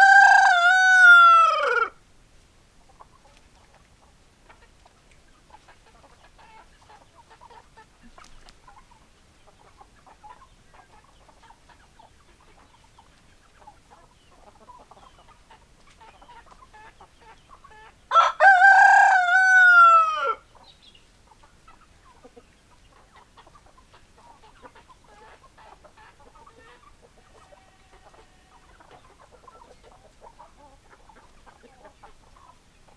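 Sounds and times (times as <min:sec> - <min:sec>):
rooster crowing: 0:00.0 - 0:02.0, 0:18.1 - 0:20.4
hens clucking softly: 0:02.8 - 0:32.9.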